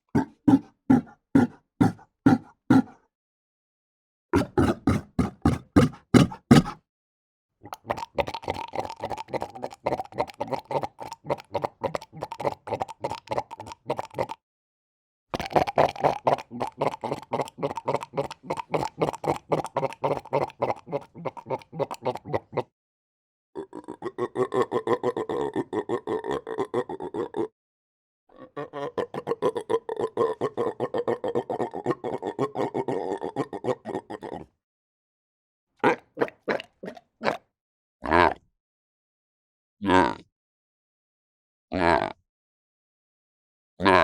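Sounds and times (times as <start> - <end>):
seal calling in rapid pulses: 4.4 - 6.8.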